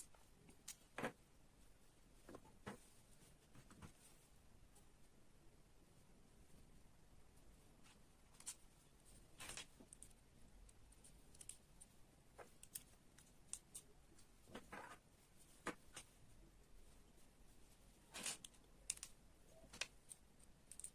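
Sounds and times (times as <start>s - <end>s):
faint clicks of small parts: 0.0s - 1.2s, 7.8s - 16.2s, 18.0s - 20.9s.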